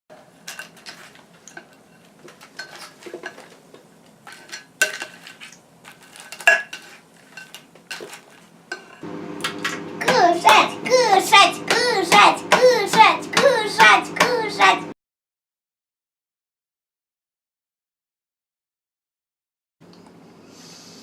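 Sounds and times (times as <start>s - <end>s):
dishes and cutlery clinking: 0.4s - 3.6s, 4.3s - 9.0s
steady hum: 9.0s - 15.0s.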